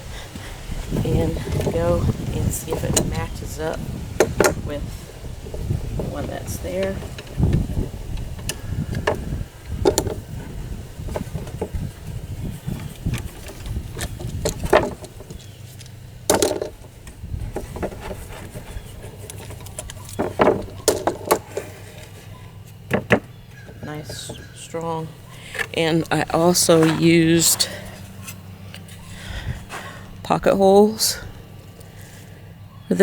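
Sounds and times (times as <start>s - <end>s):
metal clamps knocking and clicking: 16.3s - 16.8s, 19.3s - 21.7s.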